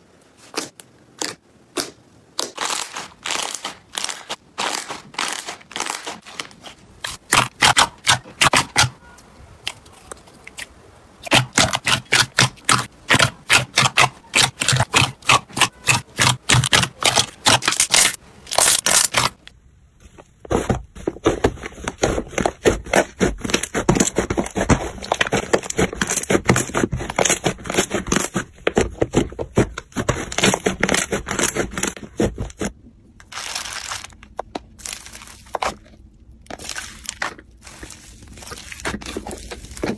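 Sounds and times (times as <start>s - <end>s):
slime crackling and popping: 0.5s - 8.8s, 11.2s - 19.4s, 33.2s - 39.9s.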